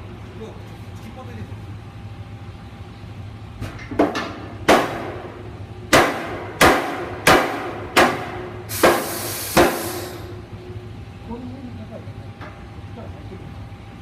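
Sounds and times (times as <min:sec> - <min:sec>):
hammer striking metal frame: 0:03.7 - 0:09.9.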